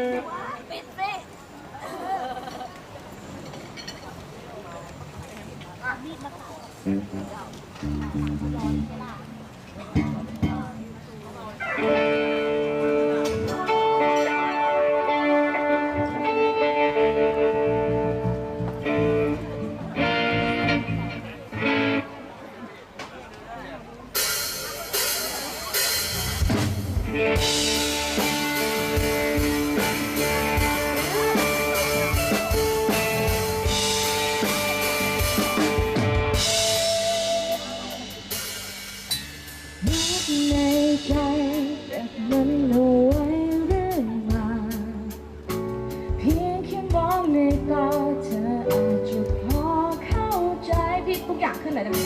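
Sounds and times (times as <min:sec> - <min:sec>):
live band playing: 0:00.0 - 0:01.3, 0:06.8 - 0:22.7, 0:23.6 - 0:52.0
woman singing slow pop song: 0:39.8 - 0:45.3, 0:46.1 - 0:52.0.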